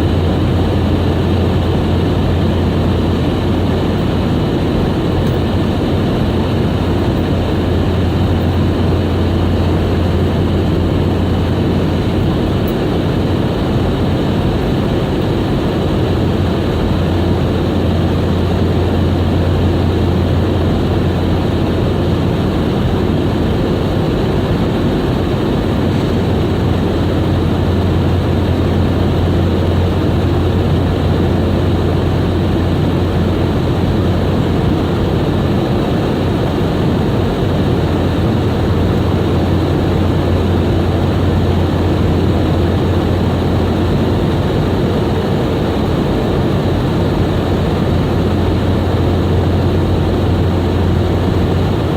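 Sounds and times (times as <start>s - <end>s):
airliner cabin engine drone: 0.0s - 51.9s.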